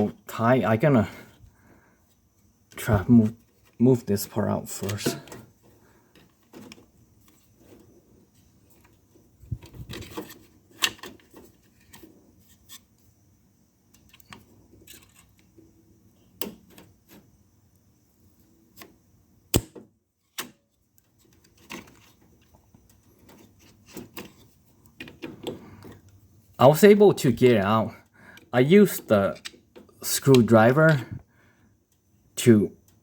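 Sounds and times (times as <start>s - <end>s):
clicks and knocks of plastic and metal: 21.0s - 26.1s.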